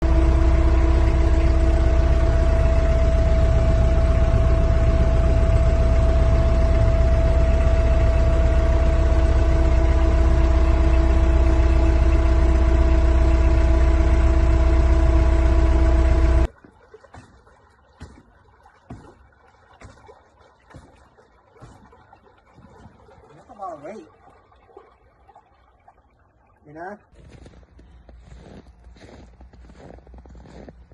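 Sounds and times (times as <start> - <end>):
motor humming with low rumble: 0.0 - 16.8, 17.7 - 30.9.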